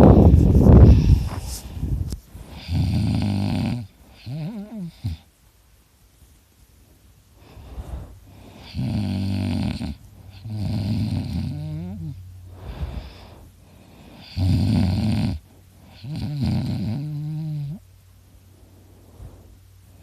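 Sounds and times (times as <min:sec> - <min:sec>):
person snoring heavily: 0:00.0 - 0:01.4, 0:02.5 - 0:05.2, 0:07.4 - 0:17.8.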